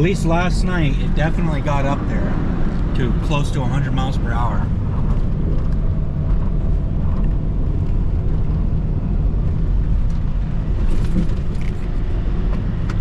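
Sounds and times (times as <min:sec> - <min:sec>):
wind buffeting microphone: 0:04.2 - 0:13.0.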